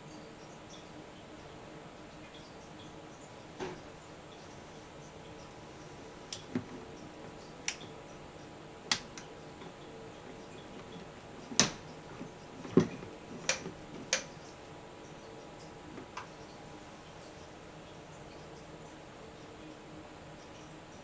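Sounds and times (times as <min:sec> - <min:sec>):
light sharp taps and knocks: 0:03.6 - 0:03.9, 0:06.3 - 0:08.0, 0:08.9 - 0:14.5.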